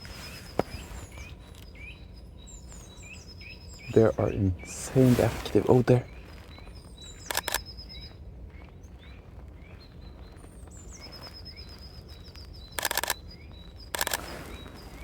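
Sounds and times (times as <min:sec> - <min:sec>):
songbirds chirping: 0:00.0 - 0:15.0
high rapid bird trill: 0:03.5 - 0:06.2
camera shutter clicks: 0:07.3 - 0:07.6, 0:12.8 - 0:13.2, 0:13.9 - 0:14.4.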